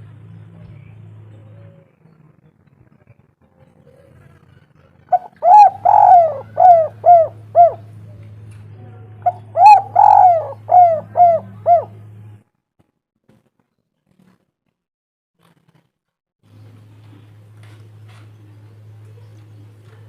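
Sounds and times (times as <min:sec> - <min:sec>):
dove cooing: 0:05.0 - 0:08.4, 0:09.2 - 0:12.1.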